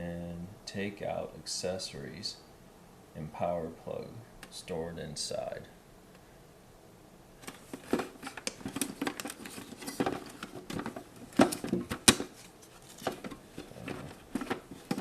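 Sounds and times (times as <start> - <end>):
plastic parts clicking and knocking: 7.4 - 15.0.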